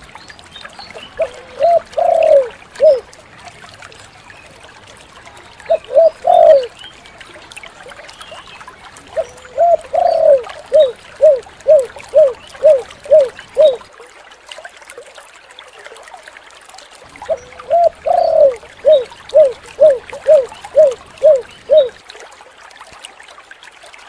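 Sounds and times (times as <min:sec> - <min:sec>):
dove cooing: 0:01.2 - 0:03.0, 0:05.7 - 0:06.7, 0:09.1 - 0:13.8, 0:17.2 - 0:22.0.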